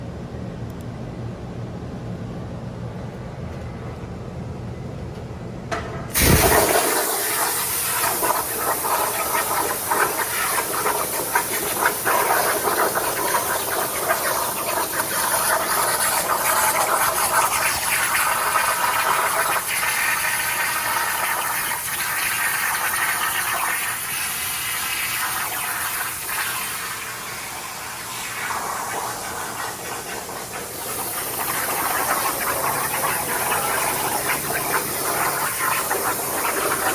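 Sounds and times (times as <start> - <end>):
low steady hum: 0.0 - 6.9
plasma arc hissing and crackling: 6.1 - 36.9.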